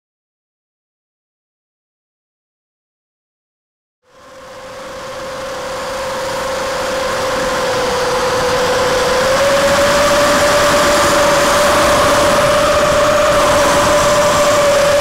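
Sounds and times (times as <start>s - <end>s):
drone motors whining: 4.1s - 15.0s.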